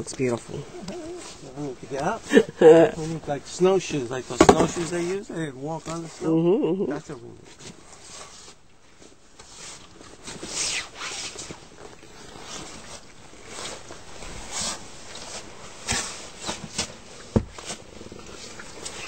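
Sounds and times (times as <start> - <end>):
snow shovel scraping snow: 1.1 - 3.2.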